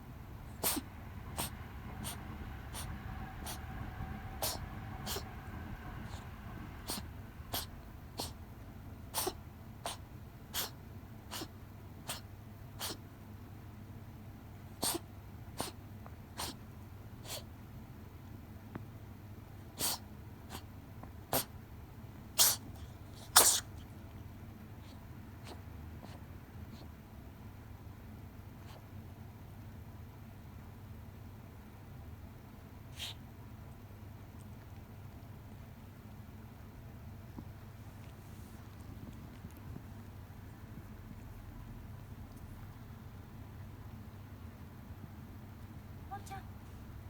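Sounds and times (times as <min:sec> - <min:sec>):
cat sneezing: 0:00.5 - 0:03.6, 0:04.4 - 0:05.4, 0:06.8 - 0:08.4, 0:09.1 - 0:13.1, 0:14.7 - 0:16.6, 0:17.2 - 0:17.5, 0:19.7 - 0:20.7, 0:21.3 - 0:21.6, 0:22.3 - 0:23.8, 0:24.8 - 0:26.9, 0:28.6 - 0:28.9, 0:32.8 - 0:33.3.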